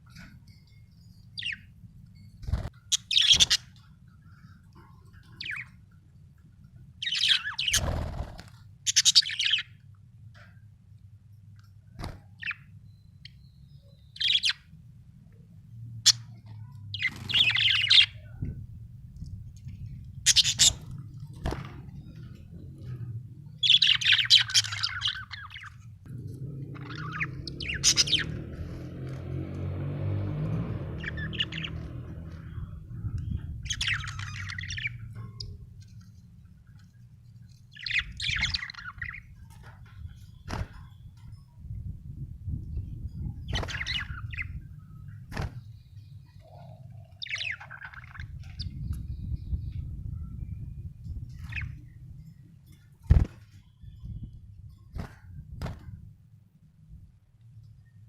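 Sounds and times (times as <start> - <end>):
budgerigar chirping: 20.3 - 20.8.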